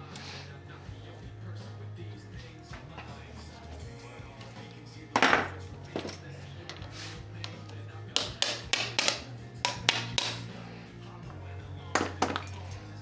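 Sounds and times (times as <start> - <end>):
background music: 0.0 - 13.0
metal tools clinking on workbench: 2.7 - 10.6, 11.9 - 13.0.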